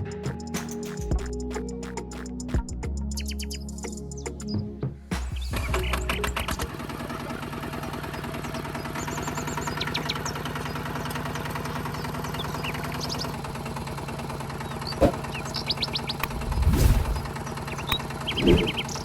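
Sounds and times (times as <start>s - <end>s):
small engine running: 5.6s - 19.0s
birds chirping: 7.7s - 19.0s.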